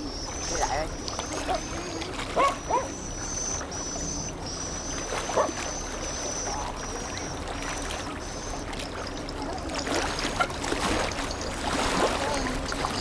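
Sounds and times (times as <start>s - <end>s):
wind: 0.0s - 13.0s
water wash: 4.8s - 13.0s.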